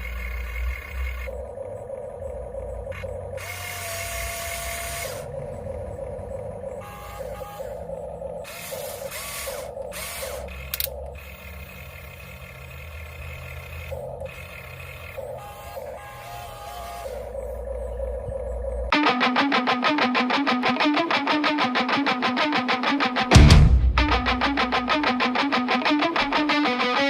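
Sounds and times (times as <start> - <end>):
toy crane motor whirring: 0.0 - 18.9
sharp click: 10.5 - 11.2.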